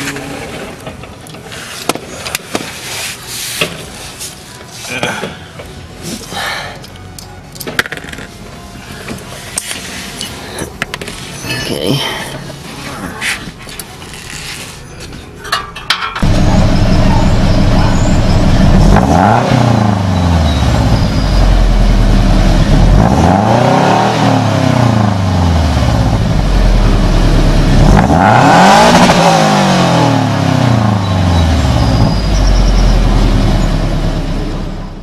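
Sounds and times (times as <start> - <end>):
car engine idling and revving: 16.2 - 35.0.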